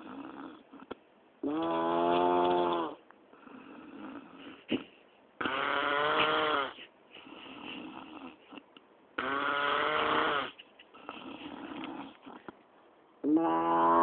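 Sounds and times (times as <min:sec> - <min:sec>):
person snoring loudly: 0:01.4 - 0:04.4, 0:05.4 - 0:06.8, 0:09.2 - 0:12.4, 0:13.2 - 0:14.0.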